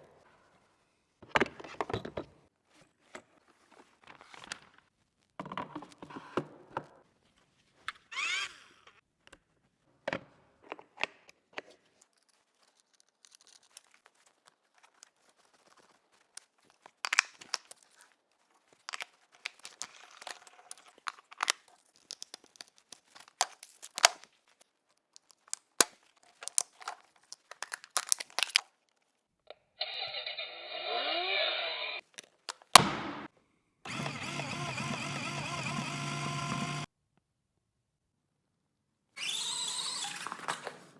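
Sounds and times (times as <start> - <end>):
rustling crinkling and tearing: 11.7 - 29.2.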